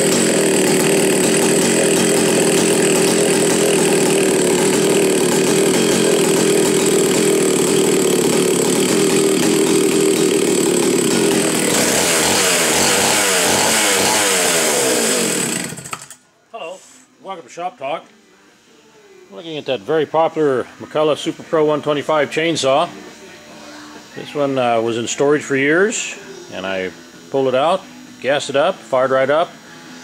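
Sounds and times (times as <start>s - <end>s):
chainsaw engine at high revs: 0.0s - 16.2s.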